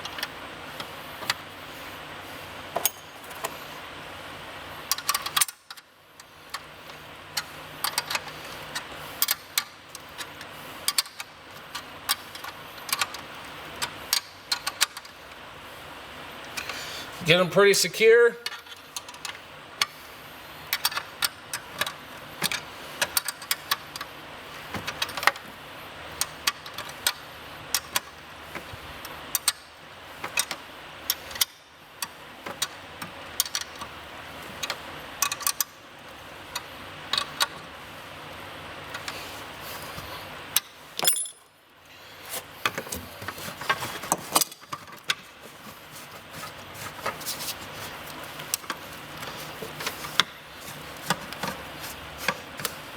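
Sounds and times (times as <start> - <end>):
faint steady hum: 0.0 - 52.9
metal tools clinking: 41.0 - 41.6.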